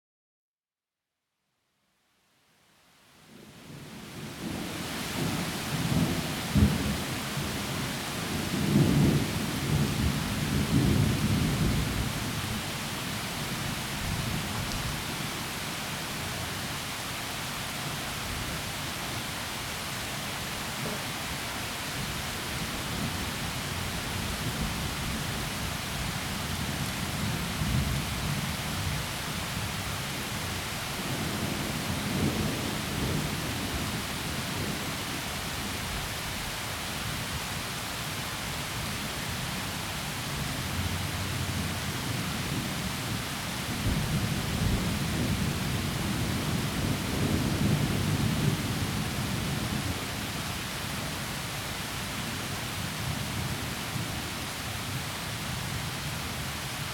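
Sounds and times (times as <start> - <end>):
heavy rain in forest: 2.7 - 56.9
low rolling thunder: 3.7 - 12.8, 31.0 - 34.9, 43.7 - 50.1.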